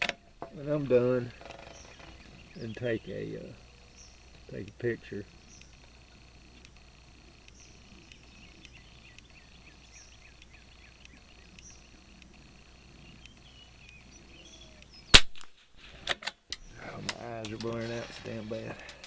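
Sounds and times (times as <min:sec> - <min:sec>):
small repeating chirps: 0:01.2 - 0:15.2
rifle shot crack: 0:15.1 - 0:16.7.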